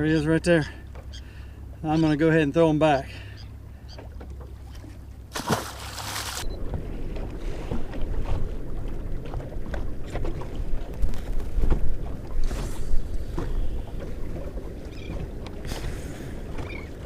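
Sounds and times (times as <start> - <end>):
water lapping against boat hull: 0.0 - 17.0
fish splashing into water: 5.3 - 6.5.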